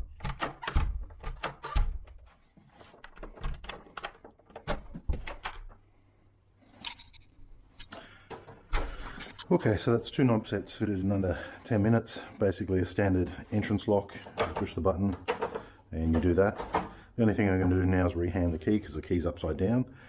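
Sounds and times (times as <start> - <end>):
metallic clicks of door lock: 0.0 - 2.2.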